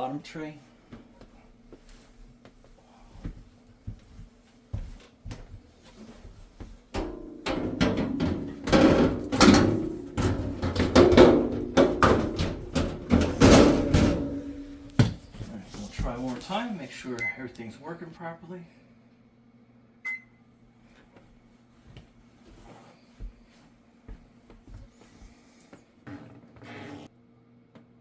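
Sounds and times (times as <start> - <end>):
metal tray clattering and scraping: 7.0 - 14.9.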